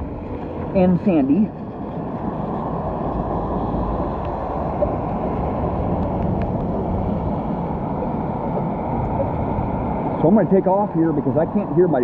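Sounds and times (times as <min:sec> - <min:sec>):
street traffic rumble: 0:00.0 - 0:12.0.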